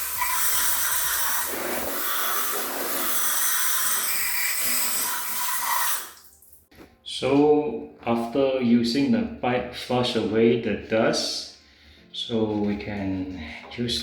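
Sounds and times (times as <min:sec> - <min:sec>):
water from hose spraying: 0:00.0 - 0:06.2.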